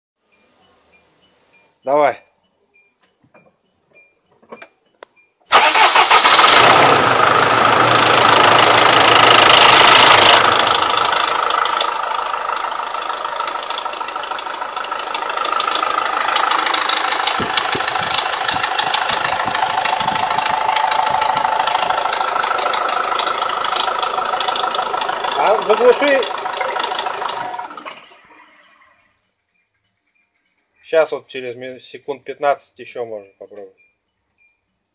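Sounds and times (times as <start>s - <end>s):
car engine starting and idling: 5.5s - 29.4s.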